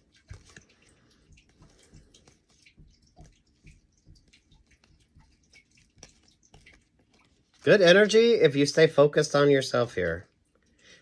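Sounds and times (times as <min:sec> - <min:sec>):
faint small clicks and ticks: 0:00.0 - 0:07.7.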